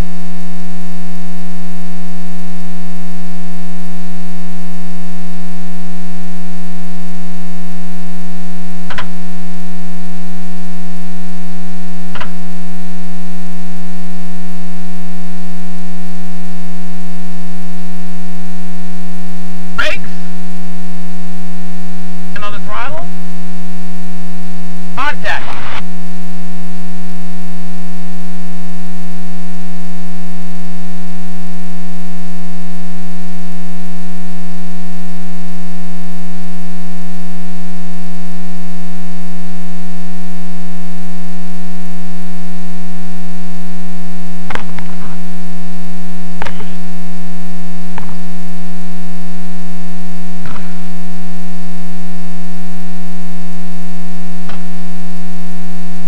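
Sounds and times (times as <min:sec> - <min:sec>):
sharp clicks: 0:08.9 - 0:09.2, 0:12.2 - 0:12.4.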